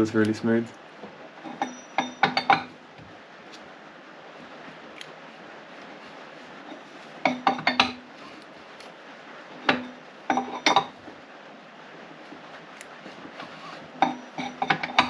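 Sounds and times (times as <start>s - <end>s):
faint steady hiss: 0.0s - 15.0s
metal tools clinking on engine: 1.4s - 2.7s, 7.2s - 8.0s, 9.7s - 11.0s, 14.0s - 15.0s.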